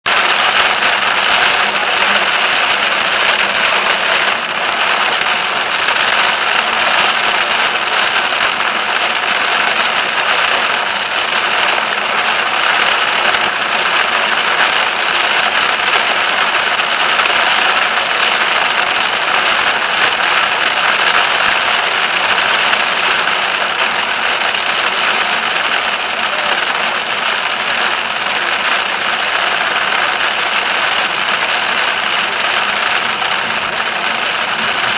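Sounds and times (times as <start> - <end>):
heavy rain hissing: 0.0 - 34.9
vehicle engine and tyres on wet road: 0.0 - 34.9.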